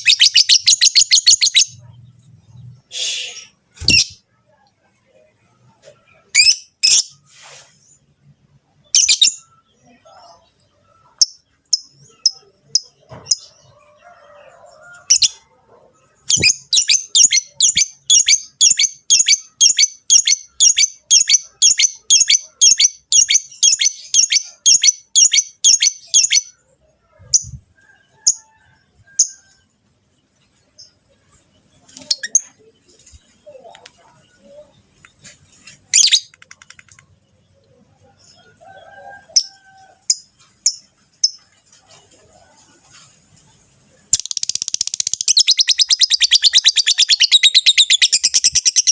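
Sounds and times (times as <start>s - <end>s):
lovebirds chirping: 0.0s - 4.2s, 16.0s - 27.6s, 43.4s - 48.9s.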